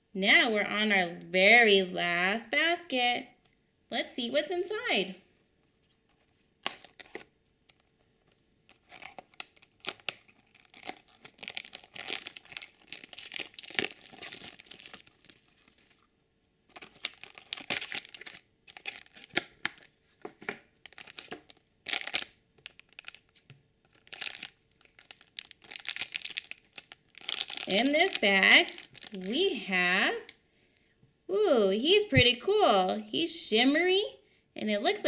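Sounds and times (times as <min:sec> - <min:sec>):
plastic packaging tearing and crinkling: 0:06.6 - 0:07.9, 0:08.7 - 0:16.1, 0:16.7 - 0:29.4.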